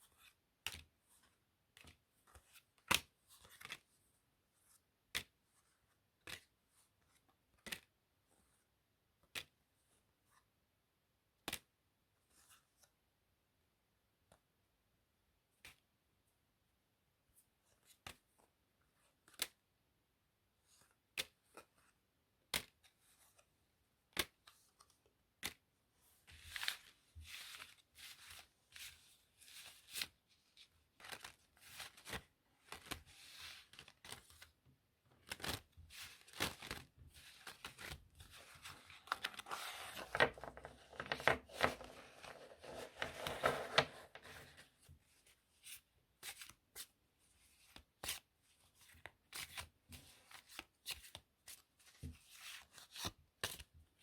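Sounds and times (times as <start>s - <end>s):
cards shuffling and rustling: 0.1s - 4.0s, 4.6s - 8.0s, 24.1s - 53.8s
playing cards clicking: 6.2s - 6.5s.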